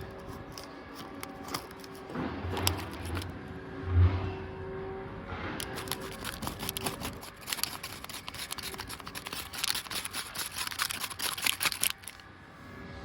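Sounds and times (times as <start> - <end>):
contents rattling in drum: 0.0 - 3.3, 5.6 - 12.2.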